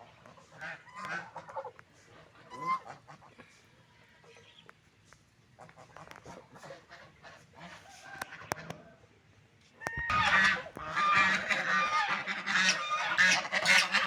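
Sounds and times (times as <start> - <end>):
ducks quacking: 0.1 - 3.6, 5.6 - 8.8, 9.8 - 14.0.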